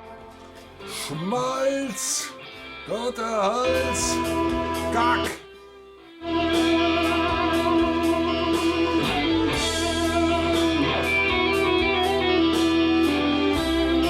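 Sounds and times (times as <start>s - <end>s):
electric guitar lead: 0.0s - 14.0s
bass line: 2.9s - 5.4s, 6.2s - 14.0s.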